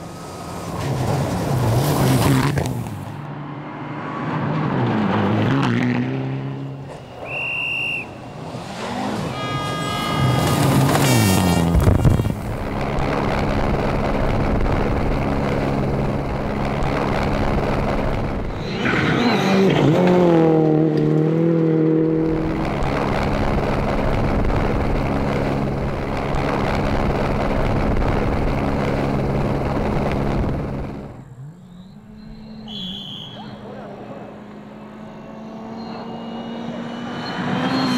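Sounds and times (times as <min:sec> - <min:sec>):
rally car engines running hard: 0:00.0 - 0:37.9.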